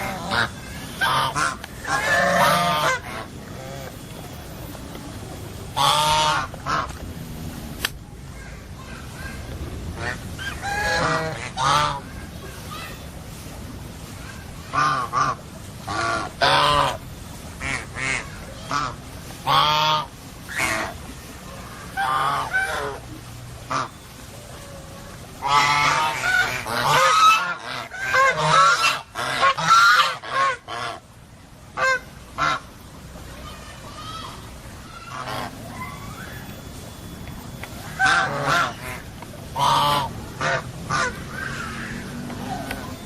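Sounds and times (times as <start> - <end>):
birds honking: 0.0 - 4.0, 5.8 - 6.9, 10.0 - 12.1, 23.6 - 24.8, 25.4 - 31.0, 37.7 - 42.0.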